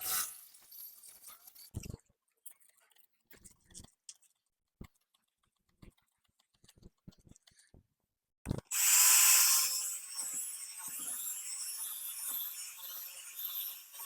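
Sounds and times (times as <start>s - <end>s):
cordless drill motor whine: 8.7s - 14.0s.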